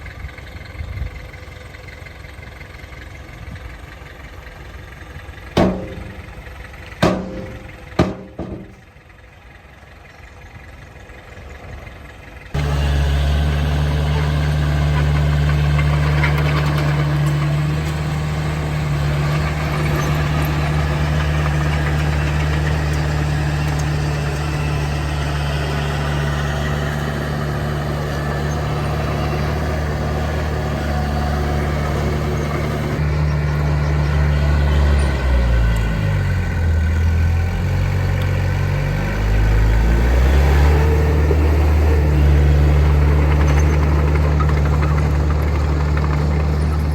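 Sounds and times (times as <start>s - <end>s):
heavy diesel engine running: 0.0s - 46.9s.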